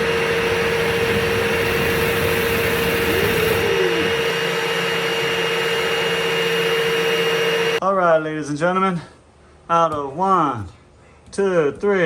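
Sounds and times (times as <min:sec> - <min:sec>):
cleaning machine whining: 0:00.0 - 0:07.8
rising and falling tone: 0:00.0 - 0:07.8.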